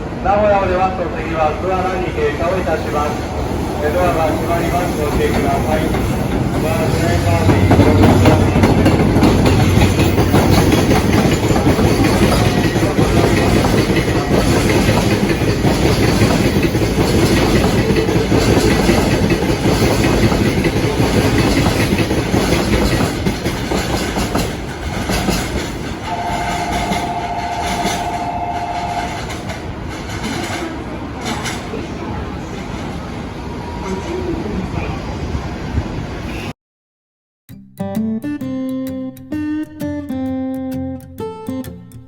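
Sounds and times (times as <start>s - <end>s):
train wheels clattering over rails: 1.9s - 33.2s.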